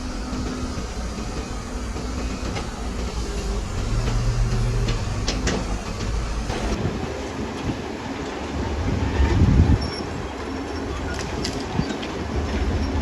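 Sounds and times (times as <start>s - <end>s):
diesel engine under load: 0.0s - 7.0s.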